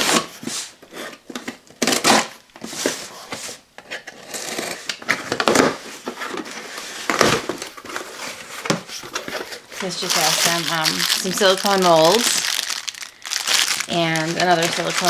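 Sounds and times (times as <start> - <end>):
packaging rustling and crinkling: 0.0 - 15.0
cardboard scraping: 4.4 - 15.0.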